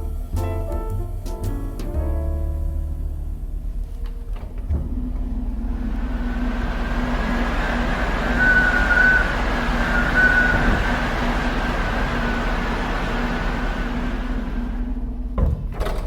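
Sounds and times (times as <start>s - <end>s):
ship engines droning: 0.0s - 15.4s
rushing noise: 4.9s - 15.2s
short high squeals: 7.3s - 13.0s.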